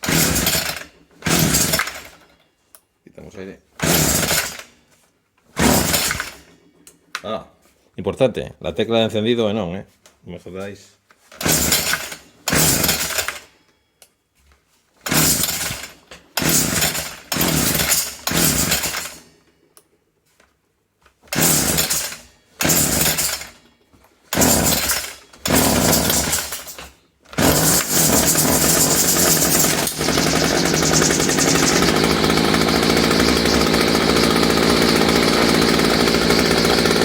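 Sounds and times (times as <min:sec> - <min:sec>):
string trimmer engine starting: 0:00.0 - 0:02.2, 0:03.8 - 0:04.7, 0:05.6 - 0:06.5, 0:11.4 - 0:13.4, 0:15.1 - 0:19.2, 0:21.3 - 0:23.5, 0:24.3 - 0:26.8, 0:27.4 - 0:37.0.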